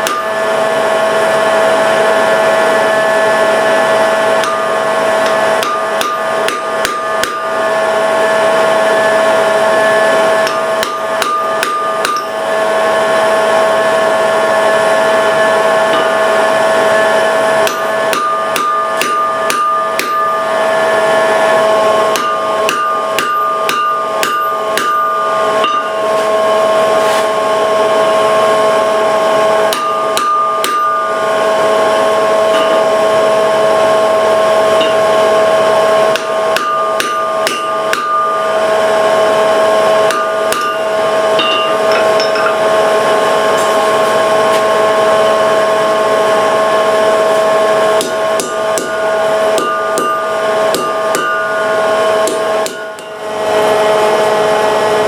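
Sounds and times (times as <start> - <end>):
hammer striking iron on anvil: 0.0 - 0.5, 4.3 - 7.7, 10.4 - 12.5, 15.9 - 16.3, 17.6 - 20.6, 22.0 - 26.2, 29.6 - 31.4, 32.5 - 32.9, 34.8 - 35.3, 36.0 - 43.0, 48.0 - 53.6
steady hum: 0.0 - 55.0.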